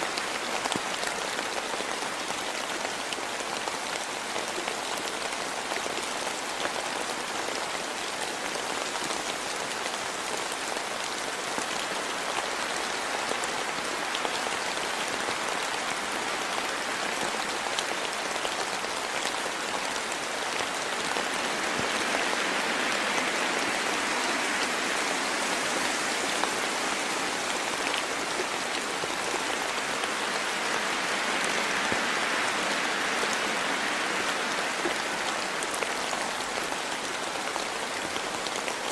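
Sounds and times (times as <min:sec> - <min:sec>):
rain pattering on leaves: 0:00.0 - 0:38.9.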